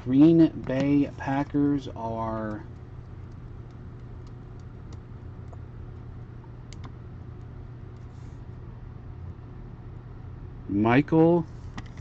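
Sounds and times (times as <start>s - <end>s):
steady low hum: 0.0s - 12.0s
faint sharp clicks and taps: 2.4s - 6.1s.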